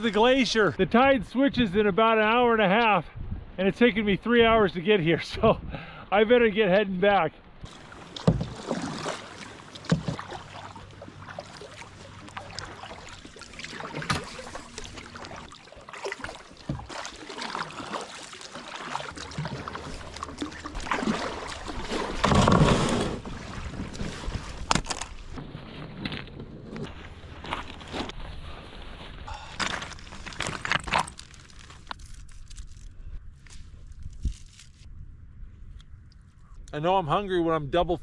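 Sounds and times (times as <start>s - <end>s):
paddle strokes and splashes: 7.7s - 31.7s.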